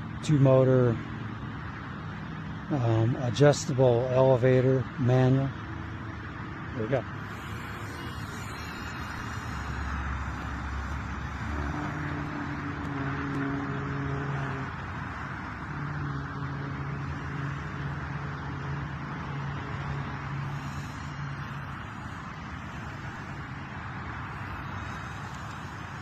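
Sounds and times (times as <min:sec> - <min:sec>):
steady hiss: 0:06.8 - 0:26.0
electric model plane motors buzzing: 0:07.1 - 0:26.0.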